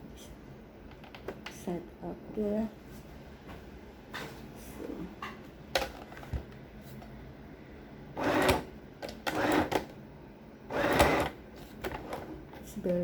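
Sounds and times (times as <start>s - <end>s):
sewing machine stitching: 8.2s - 9.8s, 10.7s - 11.4s.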